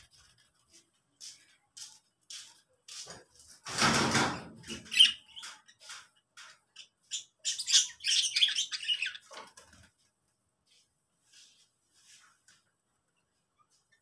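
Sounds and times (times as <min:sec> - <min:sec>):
lovebirds squawking and chirping: 0:04.6 - 0:09.5.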